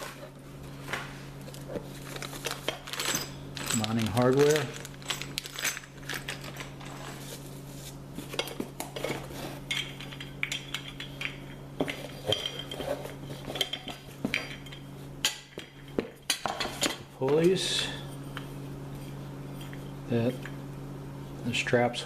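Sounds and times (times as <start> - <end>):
metal hardware clinking and rattling: 2.4 - 7.2.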